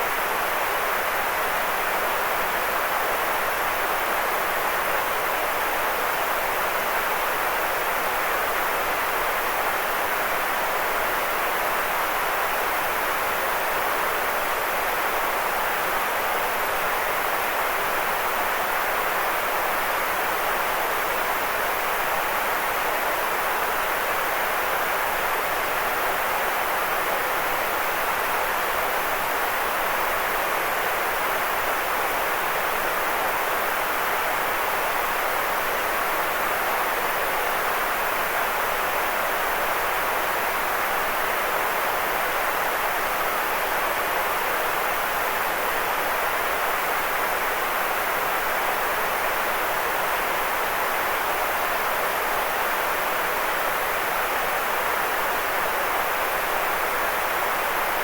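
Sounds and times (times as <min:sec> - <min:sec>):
steady synthetic hiss: 0:00.0 - 0:58.0.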